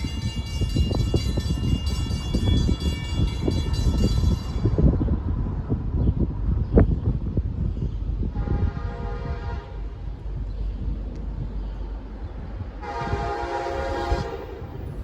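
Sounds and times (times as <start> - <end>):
low train rumble: 0.0 - 15.0
locomotive air horn chord: 8.4 - 9.8, 12.8 - 14.8.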